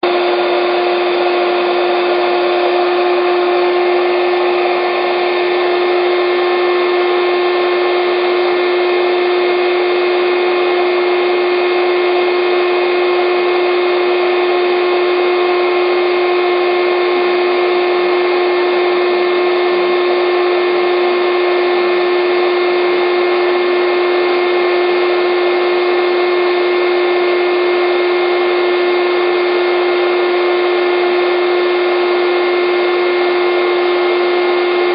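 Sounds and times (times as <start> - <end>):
electric air pump running: 0.0 - 24.2, 31.2 - 34.9.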